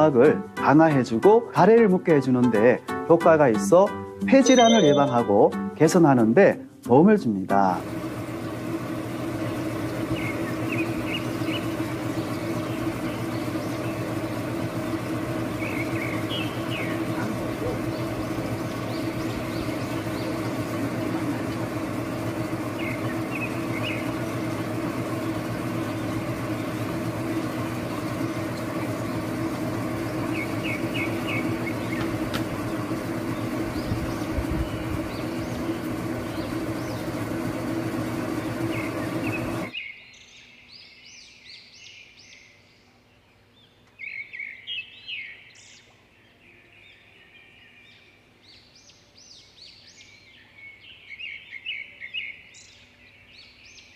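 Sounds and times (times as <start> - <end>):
machine hum: 7.7 - 39.7
small birds chirping: 7.9 - 53.9.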